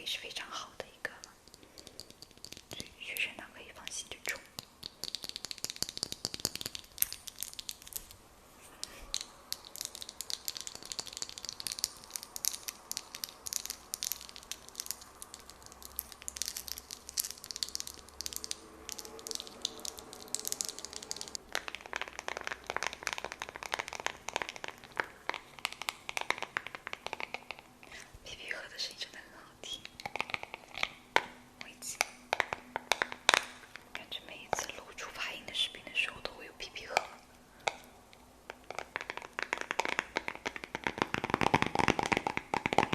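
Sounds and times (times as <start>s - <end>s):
crisp clicks and crackles: 0.4s - 8.2s, 8.8s - 42.9s.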